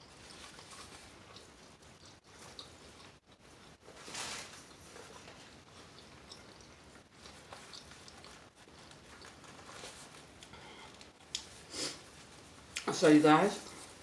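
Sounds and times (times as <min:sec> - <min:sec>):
person chewing: 0:00.5 - 0:03.1.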